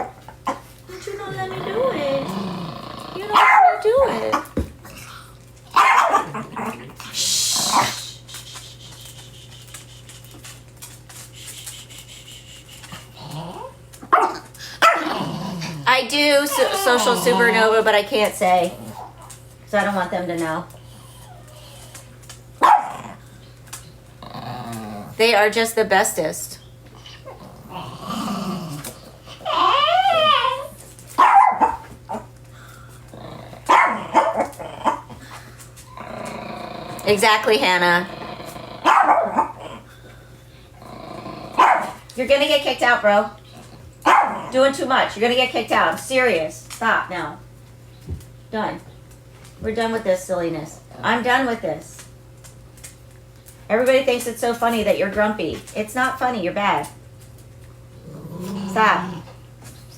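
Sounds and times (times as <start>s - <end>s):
small dogs barking: 0.0s - 2.2s, 3.2s - 4.6s, 5.7s - 8.0s, 12.9s - 17.8s, 22.6s - 23.3s, 28.9s - 32.4s, 33.5s - 35.3s, 38.8s - 39.9s, 41.5s - 42.1s, 43.6s - 44.6s
dog growling and whining: 0.0s - 8.2s, 12.8s - 17.9s, 20.7s - 25.2s, 26.9s - 32.4s, 33.0s - 40.1s, 40.7s - 42.0s, 43.4s - 44.6s, 57.9s - 59.5s
steady low hum: 0.0s - 59.9s
small dog barking: 3.3s - 4.1s, 5.7s - 6.6s, 14.0s - 15.2s, 22.6s - 23.2s, 31.2s - 32.3s, 33.7s - 35.1s, 38.8s - 39.6s, 41.6s - 42.0s, 44.0s - 44.5s
dog whining: 12.8s - 17.8s, 20.8s - 23.4s, 26.9s - 32.3s.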